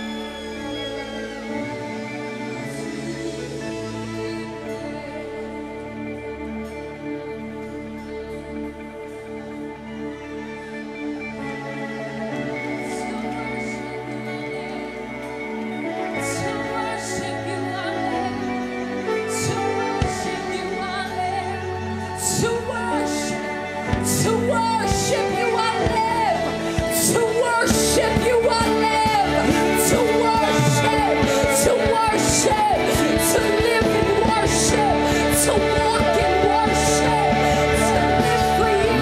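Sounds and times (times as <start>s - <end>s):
worship band playing: 0.0s - 39.0s
person singing: 12.4s - 39.0s.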